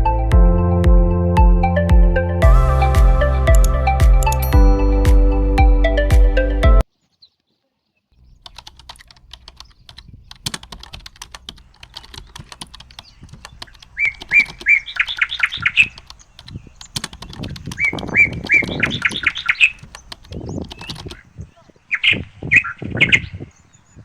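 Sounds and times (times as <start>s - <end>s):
songbird singing: 6.8s - 24.0s.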